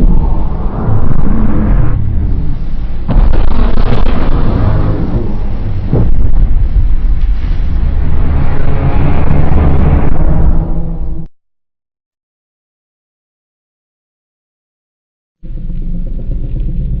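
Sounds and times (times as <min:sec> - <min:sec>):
deep monster rumble: 0:00.0 - 0:11.3.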